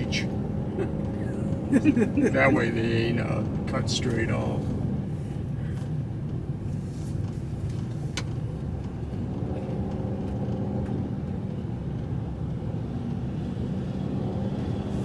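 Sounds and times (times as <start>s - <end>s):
car engine idling: 0.0s - 5.8s.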